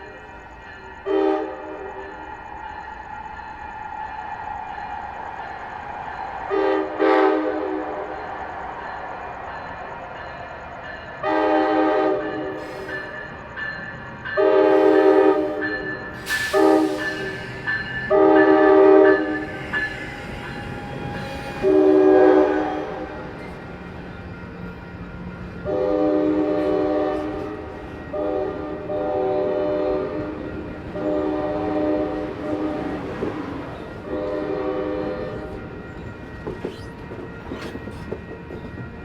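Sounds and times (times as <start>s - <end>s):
locomotive air horn blasts: 1.0s - 2.0s, 6.5s - 8.1s, 11.2s - 12.9s, 14.4s - 15.6s, 16.3s - 19.5s, 21.5s - 23.2s, 25.6s - 33.0s, 34.0s - 35.6s.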